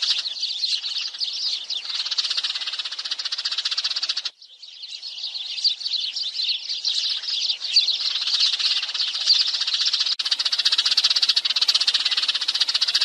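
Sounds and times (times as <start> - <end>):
sparrow flock chirping: 0.0 - 13.0
fast rattling chatter: 10.2 - 13.0.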